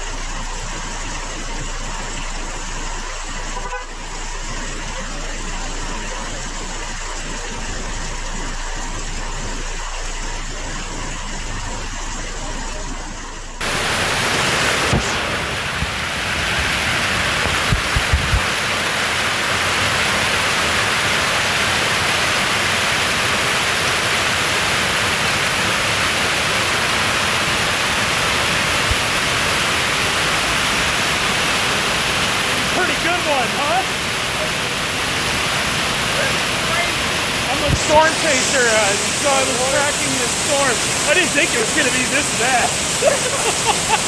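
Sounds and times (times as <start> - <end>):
hail and rain pelting down: 13.6 - 44.0.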